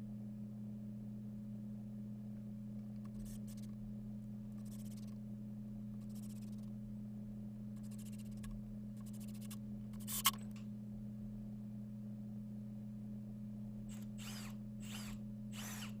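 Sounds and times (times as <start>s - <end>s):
low electrical hum: 0.0s - 16.0s
sharp click: 7.8s - 10.7s.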